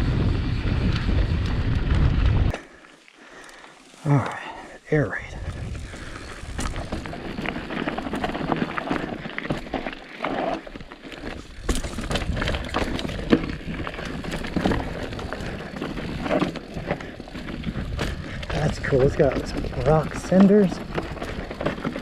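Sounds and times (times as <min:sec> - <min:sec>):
wind rumble on microphone: 0:00.0 - 0:02.6, 0:05.2 - 0:08.3, 0:11.5 - 0:21.7
tyres crunching on dirt: 0:00.7 - 0:22.0
bike clacking and rattling: 0:05.5 - 0:22.0.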